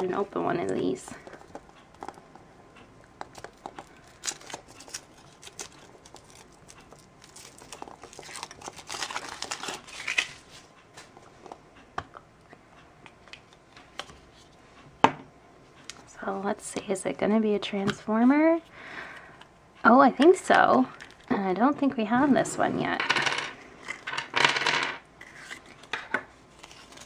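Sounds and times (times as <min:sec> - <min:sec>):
foil wrapper crinkling and tearing: 0:03.4 - 0:10.6, 0:26.5 - 0:27.0.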